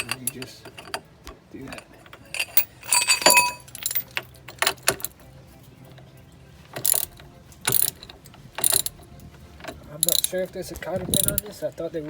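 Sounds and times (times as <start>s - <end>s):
hand ratchet clicking: 0.0s - 5.2s, 6.7s - 11.9s
sharp metal clink: 1.7s - 5.2s, 10.0s - 10.4s.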